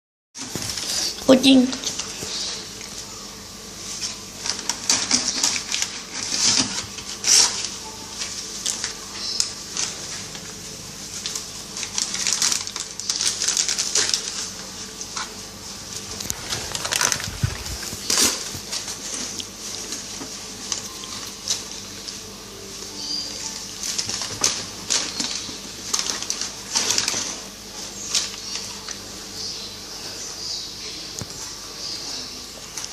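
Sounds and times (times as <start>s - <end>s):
plastic bag crinkling: 3.9s - 22.3s, 23.4s - 29.0s.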